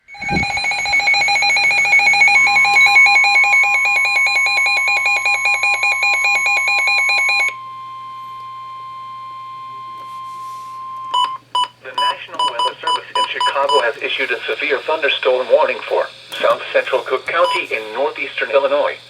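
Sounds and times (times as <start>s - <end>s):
warbling electronic alarm beeping: 0.0s - 13.9s, 17.4s - 17.8s
steady alert tone: 0.1s - 4.7s.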